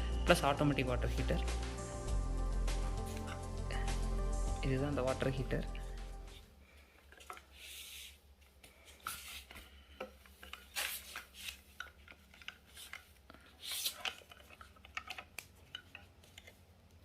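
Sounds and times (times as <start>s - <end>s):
handling clicks taps and scrapes: 7.0s - 7.6s, 8.4s - 17.0s.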